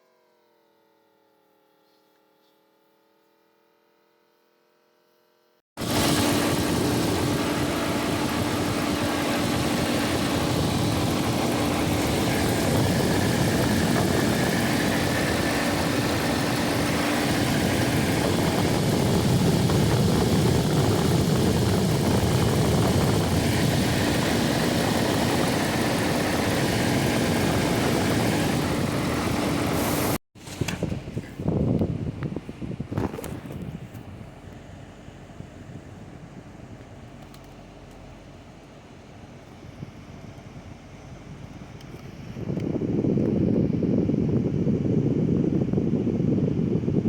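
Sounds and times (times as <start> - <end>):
car engine running: 5.8 - 30.2.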